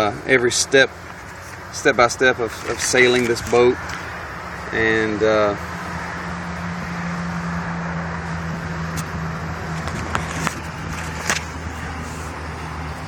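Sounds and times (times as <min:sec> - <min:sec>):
low mechanical hum: 0:00.0 - 0:13.0
papers and folders clicking: 0:09.7 - 0:11.8.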